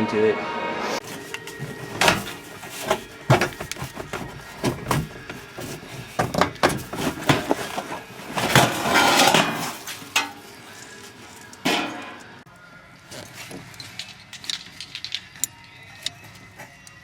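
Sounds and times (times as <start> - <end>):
knocks and clatter of tools: 1.0 - 10.4, 13.2 - 17.0.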